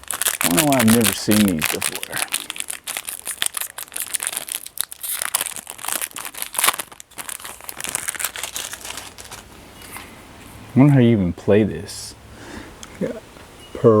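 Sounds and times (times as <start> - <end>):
foil wrapper crinkling and tearing: 0.0 - 9.6.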